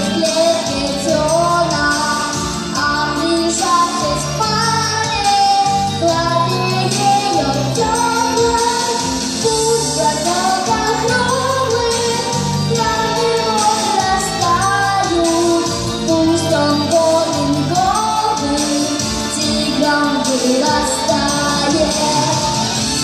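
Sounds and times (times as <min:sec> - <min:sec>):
instrumental backing: 0:00.0 - 0:23.0.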